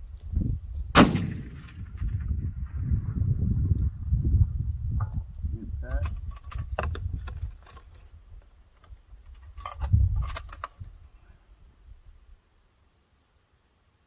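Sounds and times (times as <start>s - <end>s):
low rumble: 0.9s - 6.3s
rifle bolt clicking and clattering: 6.0s - 8.0s, 8.8s - 11.0s.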